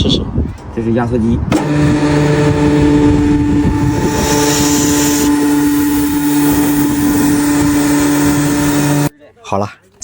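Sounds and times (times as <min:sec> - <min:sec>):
compressor humming: 0:01.5 - 0:09.1.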